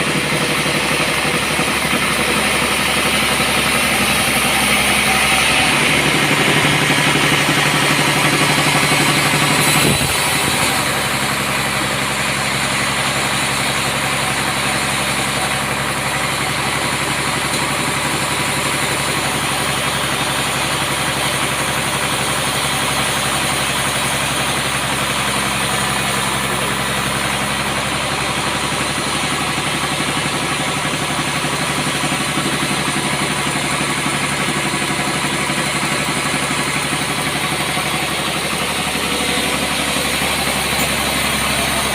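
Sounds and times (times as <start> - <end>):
loud noise: 0.0 - 23.5
sawmill engine running: 0.0 - 41.9.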